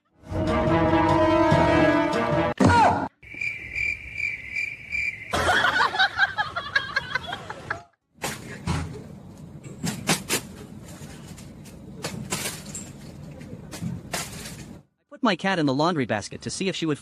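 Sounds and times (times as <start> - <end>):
cricket chirping: 3.2 - 7.4.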